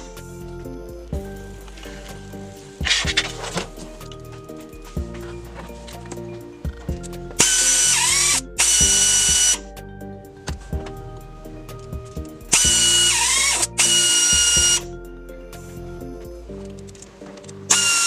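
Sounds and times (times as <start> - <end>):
background music: 0.0 - 18.0
pneumatic tool hiss and whine: 7.4 - 9.6, 12.5 - 14.9, 17.7 - 18.0.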